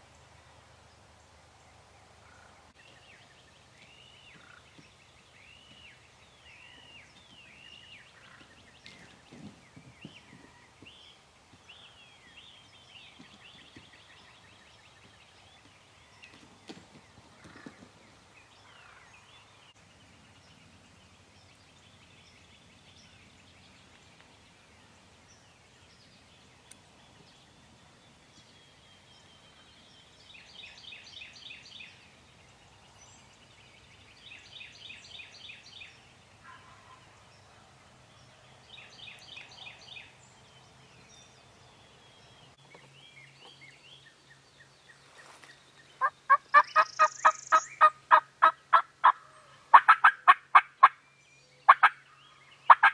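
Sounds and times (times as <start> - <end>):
distant turkey gobbling: 46.0 - 51.0, 51.7 - 52.0, 52.7 - 52.9
rapid turkey calls close by: 46.0 - 51.0, 51.6 - 52.9.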